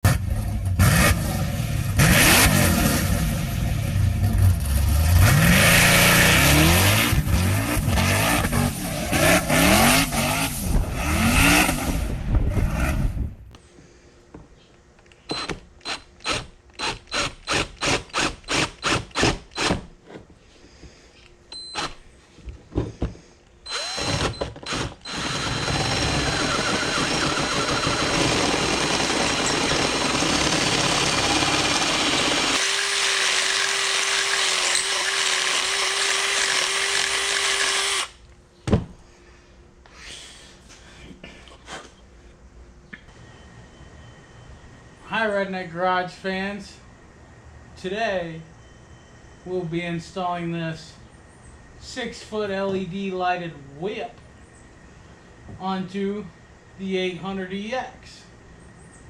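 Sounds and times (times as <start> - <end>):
engine revving: 0.0 - 13.3, 25.2 - 37.2
mechanical noise with high whine: 0.1 - 28.2, 37.0 - 59.0.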